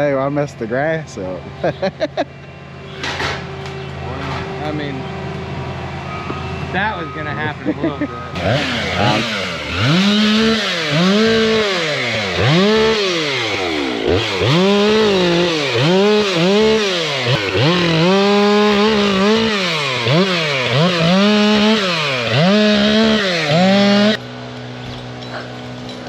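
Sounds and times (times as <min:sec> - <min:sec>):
chainsaw revving: 0:08.4 - 0:24.2.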